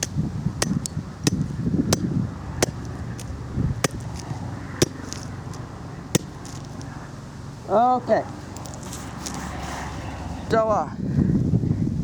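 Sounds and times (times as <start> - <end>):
hammer striking battery: 0.0 - 2.9, 6.2 - 6.4.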